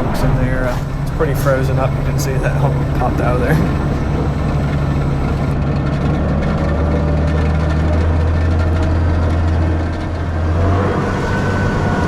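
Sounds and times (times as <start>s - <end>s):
manure spreader beaters: 0.0s - 5.6s
tractor engine running: 0.0s - 12.0s.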